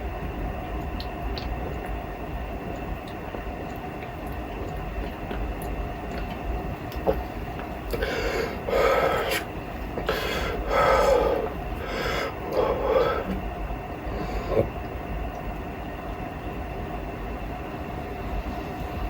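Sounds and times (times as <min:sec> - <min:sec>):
low background rumble: 0:00.0 - 0:19.0
person swallowing: 0:06.1 - 0:13.5
loud strained breaths: 0:07.9 - 0:14.8.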